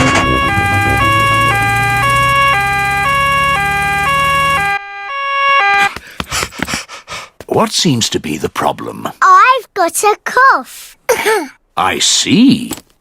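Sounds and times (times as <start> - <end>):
low engine hum: 0.0 - 4.7
cartoon two-tone siren: 0.0 - 6.0.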